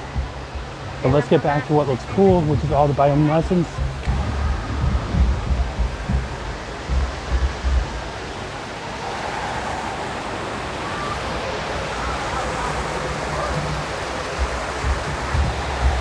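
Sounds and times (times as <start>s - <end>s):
low thumps: 0.0s - 1.2s, 2.2s - 8.6s, 13.0s - 16.0s
faint distant voices: 0.0s - 16.0s
steady rushing noise: 0.0s - 16.0s.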